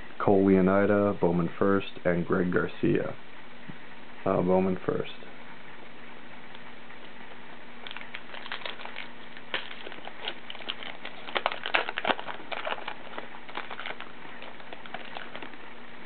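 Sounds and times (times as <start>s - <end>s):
faint steady hum: 0.0s - 16.0s
wrapper crinkling as torn open: 7.8s - 15.6s
cards rustling: 7.8s - 15.7s.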